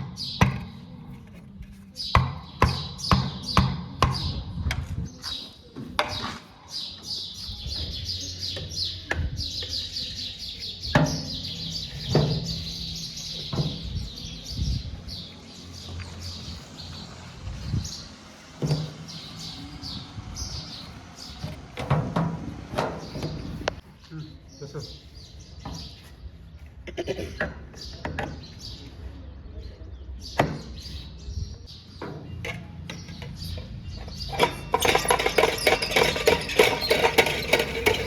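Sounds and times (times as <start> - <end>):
birds chirping: 0.0 - 38.0
diesel engine running: 14.8 - 23.8.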